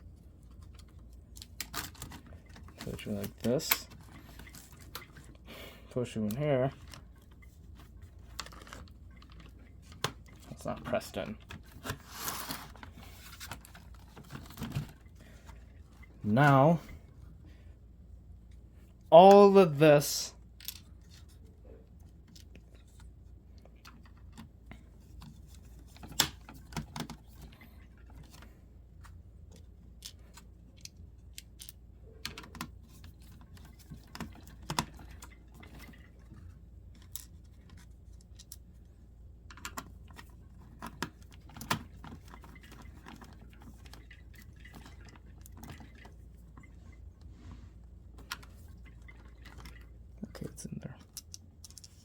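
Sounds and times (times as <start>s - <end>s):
plastic and metal parts clicking: 39.5s - 46.1s.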